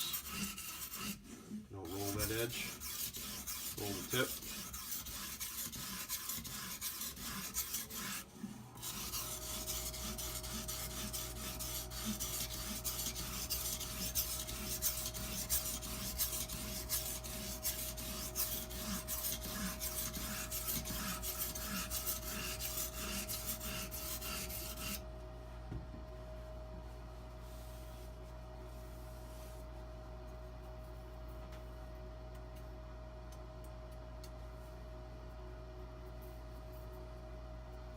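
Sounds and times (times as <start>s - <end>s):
stone rasping along knife edge: 0.0s - 25.0s
low hum with faint tone: 0.0s - 37.9s.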